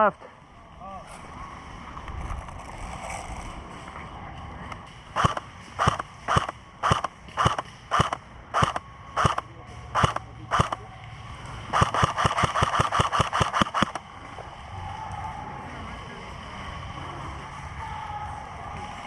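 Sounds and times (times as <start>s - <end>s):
airsoft rifle shots: 5.2s - 10.8s, 11.7s - 14.0s.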